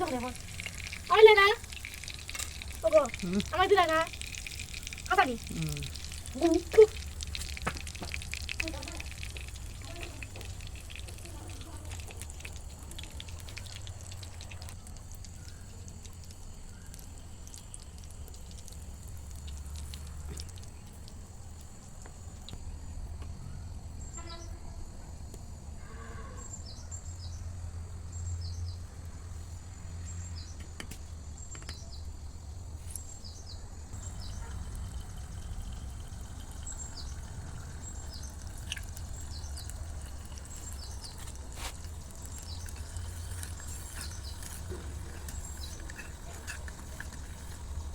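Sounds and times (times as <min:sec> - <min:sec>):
low steady rumble: 0:33.8 - 0:47.9.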